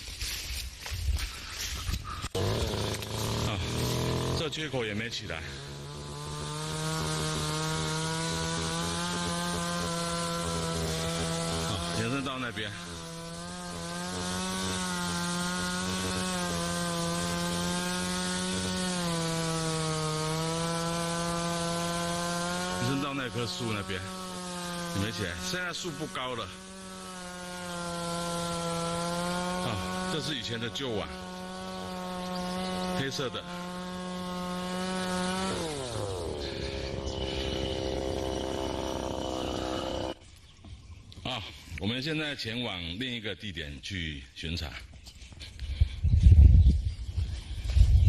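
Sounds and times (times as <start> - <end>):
drone propellers humming: 2.2 - 4.4, 31.2 - 40.2
small engine running: 2.2 - 40.2.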